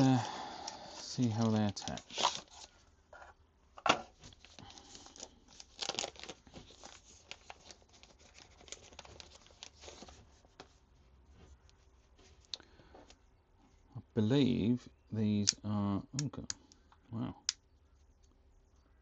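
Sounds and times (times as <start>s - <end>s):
plastic packaging crinkling: 1.0s - 2.8s, 4.1s - 10.7s.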